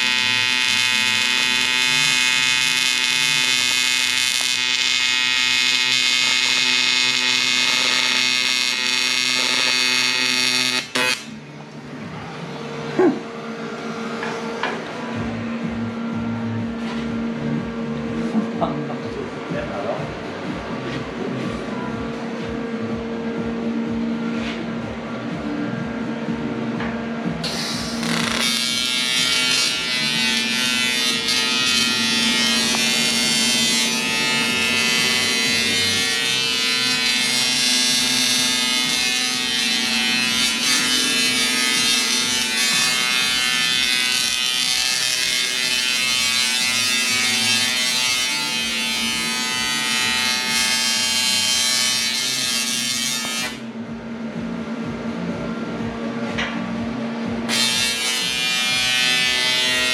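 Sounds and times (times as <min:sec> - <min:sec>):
power tool motor hissing: 0:00.0 - 0:11.2.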